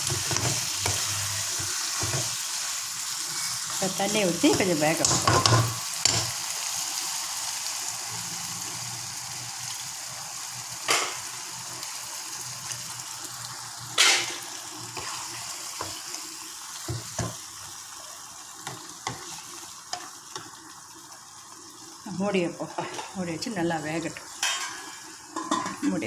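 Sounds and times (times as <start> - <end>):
spoon scraping pan: 0.0 - 2.5, 15.0 - 16.2
food sizzling in a pan: 0.0 - 26.0.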